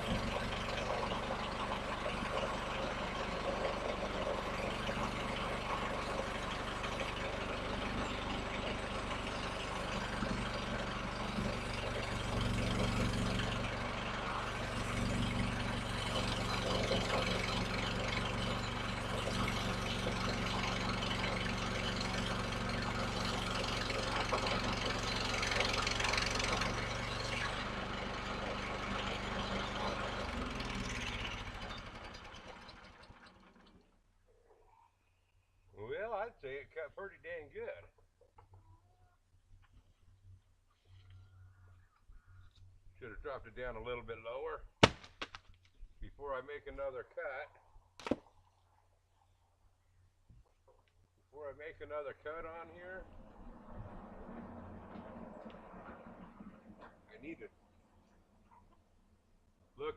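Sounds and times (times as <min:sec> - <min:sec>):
gas engine running: 0:00.0 - 0:33.9.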